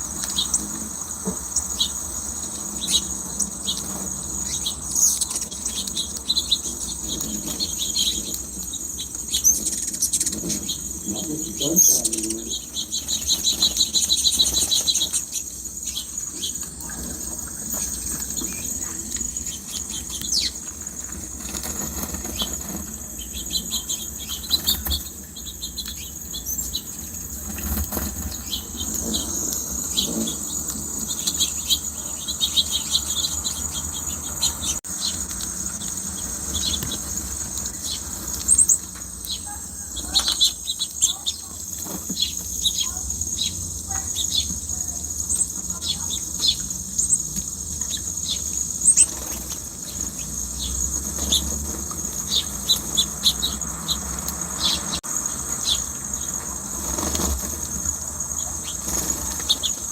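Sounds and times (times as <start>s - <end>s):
high insect drone: 0.0s - 59.9s
bird chirps: 1.4s - 59.9s
bird wing flutters: 20.1s - 23.8s, 27.2s - 31.1s, 56.5s - 58.0s, 58.6s - 59.9s.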